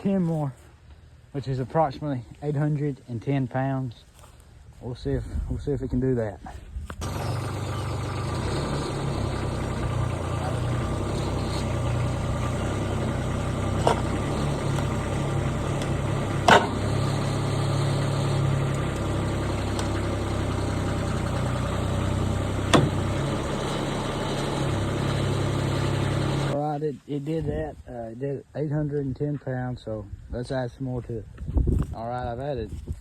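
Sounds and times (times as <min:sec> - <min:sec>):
diesel engine running: 0:06.9 - 0:26.6
sharp knocks: 0:15.7 - 0:17.1, 0:22.7 - 0:23.3.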